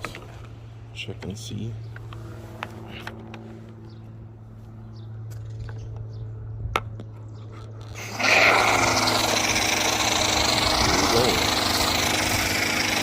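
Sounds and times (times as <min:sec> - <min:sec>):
pressure washer pump hum: 0:07.8 - 0:13.0.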